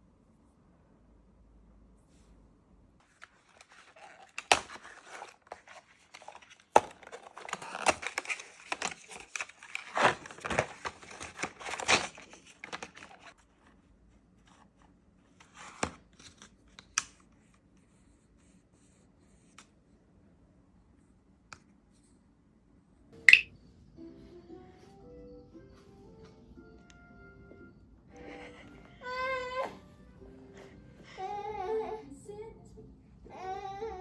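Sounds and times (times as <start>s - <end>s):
packaging tearing and crinkling: 3.4s - 13.4s.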